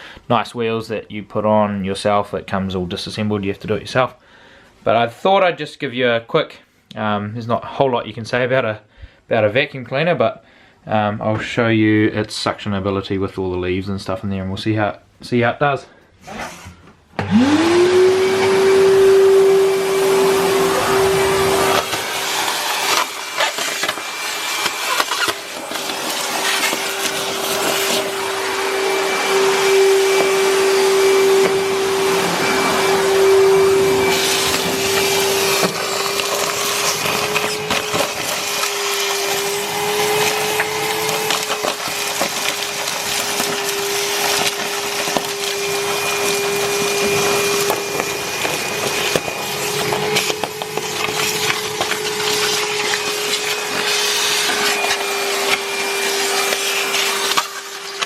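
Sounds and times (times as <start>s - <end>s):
shop vacuum motor whine: 16.2s - 58.0s
leaves rattling through hose: 19.9s - 58.0s.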